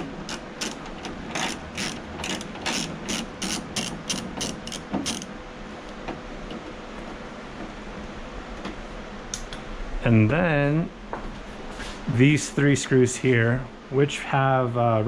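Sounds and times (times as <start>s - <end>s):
hand ratchet clicking: 0.0s - 5.3s.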